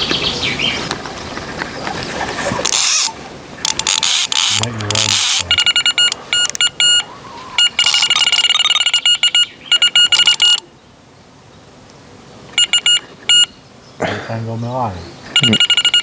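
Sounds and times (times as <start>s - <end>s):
electronic bite alarm beeping: 3.7s - 10.7s, 12.6s - 13.6s, 15.4s - 16.0s.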